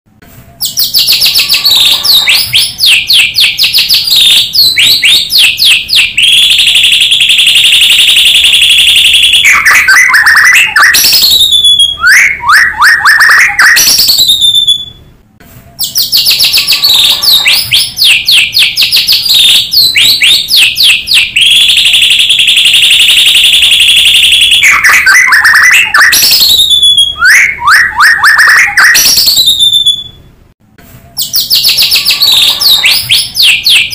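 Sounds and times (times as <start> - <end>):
songbird chattering and trilling: 15.8 - 21.0.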